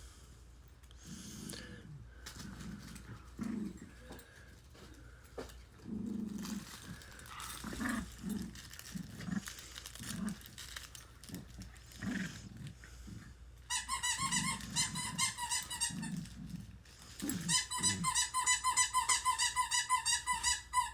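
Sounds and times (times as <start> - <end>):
dog growling grunts: 1.1 - 4.3, 5.8 - 13.4, 14.2 - 18.3.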